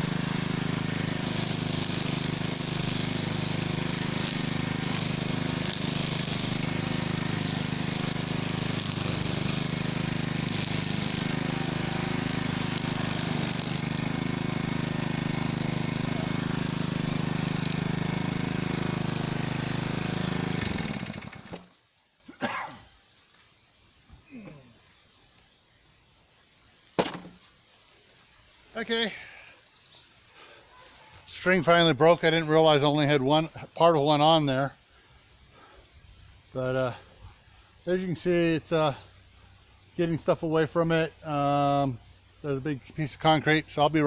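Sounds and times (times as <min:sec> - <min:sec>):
string trimmer engine running: 0:00.0 - 0:21.7.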